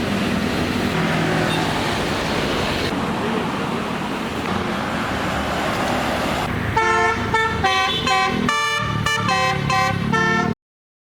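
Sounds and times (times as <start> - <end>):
engine and traffic noise: 0.0 - 10.6
musical air horn tune: 6.8 - 10.6.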